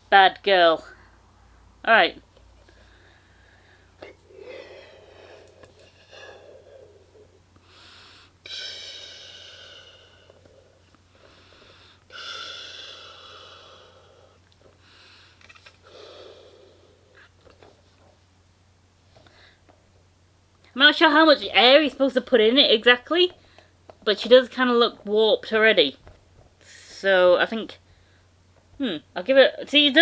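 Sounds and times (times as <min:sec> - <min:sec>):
quick breaths in: 0:02.6 - 0:17.2
blowing into valve with air rush: 0:04.3 - 0:14.1.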